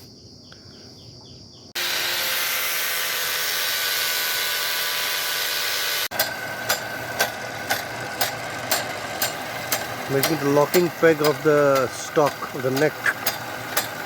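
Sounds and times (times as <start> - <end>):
power tool whirring on wood: 1.8 - 14.0
machine knocking regularly: 6.1 - 14.0.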